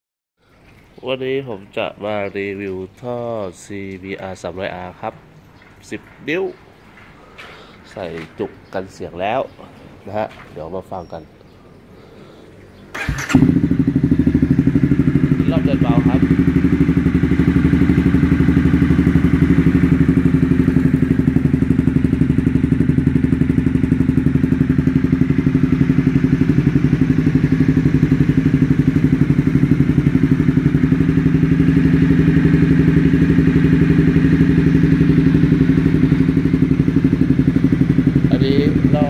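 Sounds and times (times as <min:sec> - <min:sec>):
loud motorcycle engine idling: 0:13.0 - 0:39.0.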